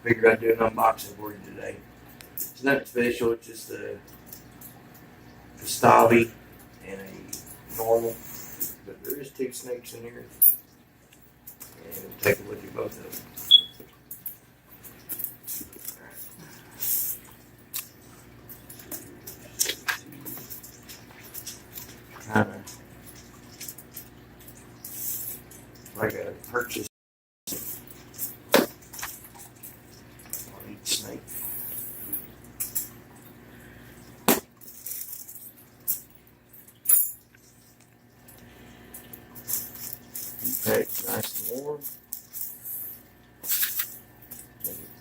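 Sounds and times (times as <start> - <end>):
packing material rustling and crinkling: 39.5 - 42.8.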